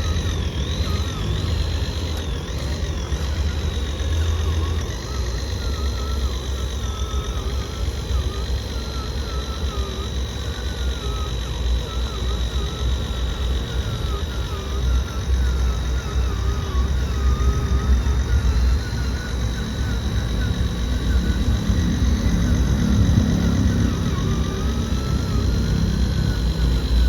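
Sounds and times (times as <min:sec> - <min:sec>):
small electric motors whining: 0:00.0 - 0:27.0.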